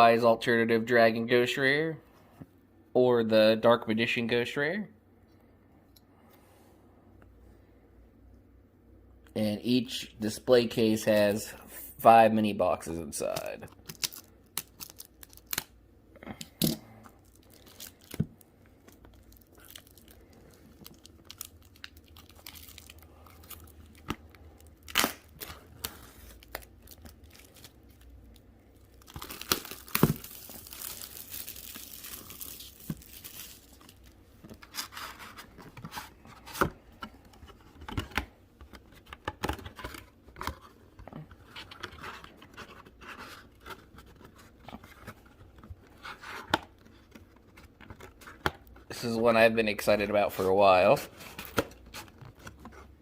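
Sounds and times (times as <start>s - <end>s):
packaging tearing and crinkling: 13.3s - 15.8s, 16.5s - 35.2s.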